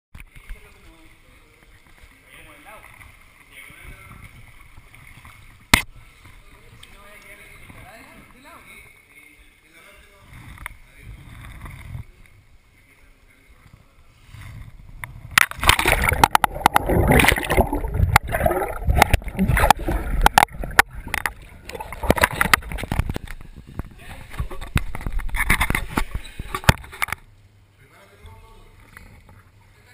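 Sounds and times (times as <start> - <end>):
water splashing around kayak: 15.1 - 27.0.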